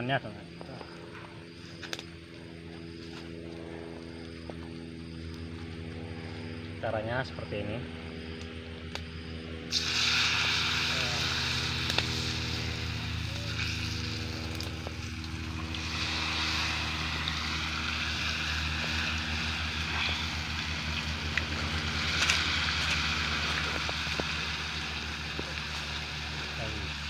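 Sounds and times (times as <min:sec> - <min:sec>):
steady low hum: 0:00.0 - 0:27.0
batter sizzling in hot oil: 0:09.7 - 0:27.0.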